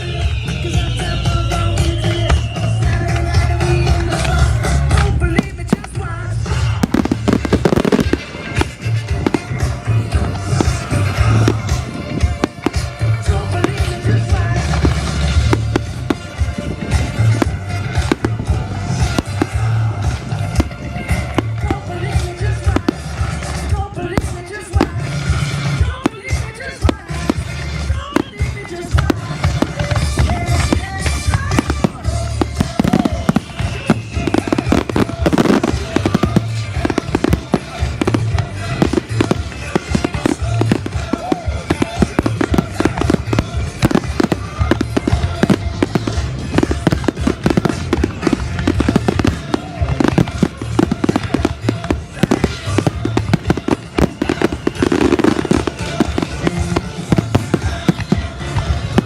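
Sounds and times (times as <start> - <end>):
fireworks bangs and crackles: 0.0 - 59.0
music for fireworks display: 0.0 - 59.0.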